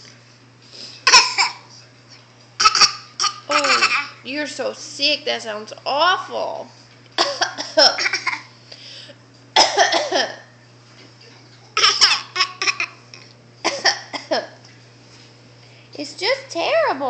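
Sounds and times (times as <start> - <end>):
young child coughing: 1.1 - 1.7, 2.6 - 4.1, 7.2 - 8.5, 9.6 - 10.5, 11.8 - 13.0, 13.6 - 14.5.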